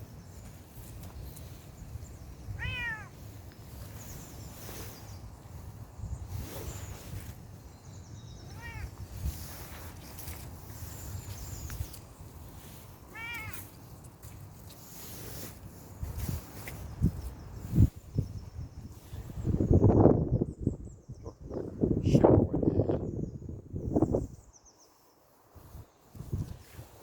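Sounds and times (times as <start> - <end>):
low wind rumble: 0.0 - 14.1, 15.0 - 24.7
kitten meowing: 2.6 - 3.1, 8.5 - 8.9, 13.1 - 13.6.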